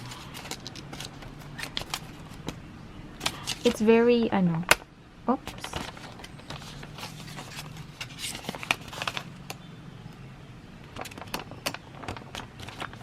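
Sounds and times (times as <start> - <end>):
paper rustling and crinkling: 0.0 - 2.6, 3.2 - 3.9, 5.5 - 9.3, 11.0 - 13.0.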